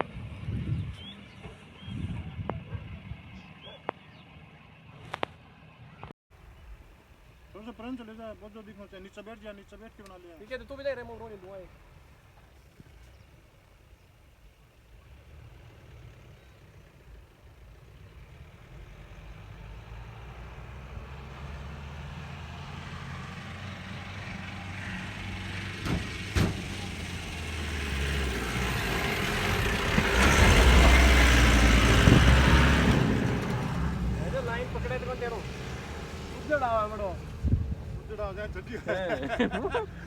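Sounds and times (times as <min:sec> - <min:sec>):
diesel engine working hard: 0:15.0 - 0:38.7.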